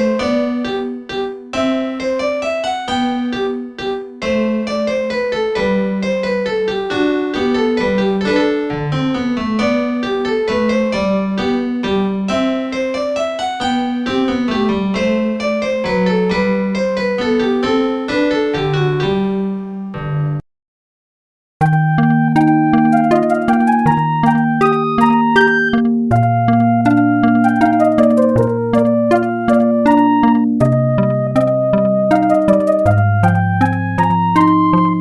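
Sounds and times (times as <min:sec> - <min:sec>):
polyphonic ringtone melody: 0:21.6 - 0:35.0.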